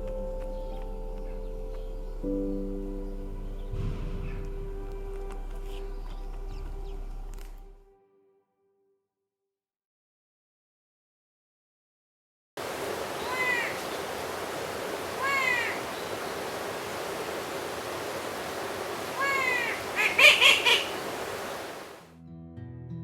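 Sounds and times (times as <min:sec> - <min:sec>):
garden ambience: 0:00.0 - 0:07.8, 0:12.6 - 0:22.0
bird calling: 0:12.9 - 0:22.0.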